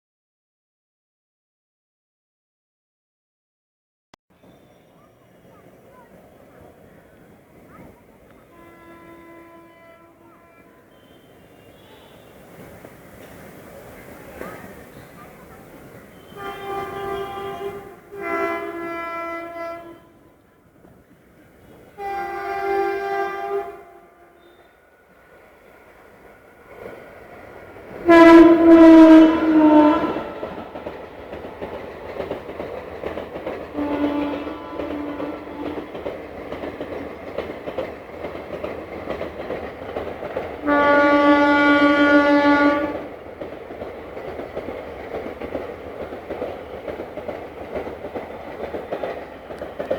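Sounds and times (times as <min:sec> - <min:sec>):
train wheels rumbling over rails: 0:04.3 - 0:49.9
locomotive horn blasts: 0:08.3 - 0:12.5, 0:16.1 - 0:20.4, 0:22.0 - 0:24.8, 0:28.0 - 0:30.6, 0:33.7 - 0:36.0, 0:40.6 - 0:43.1.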